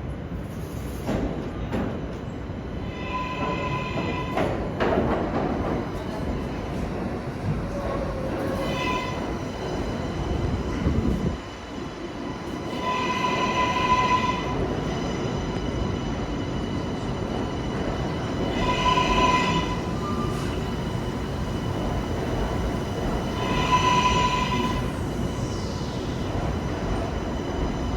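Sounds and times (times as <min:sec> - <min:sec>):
subway train rumbling: 0:00.0 - 0:27.9
high ringing train squeal: 0:02.8 - 0:04.6, 0:07.7 - 0:11.2, 0:11.8 - 0:27.9.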